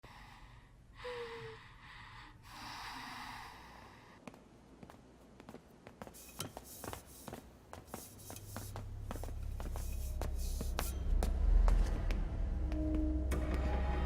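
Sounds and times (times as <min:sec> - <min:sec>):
low rumble: 0:08.8 - 0:14.0.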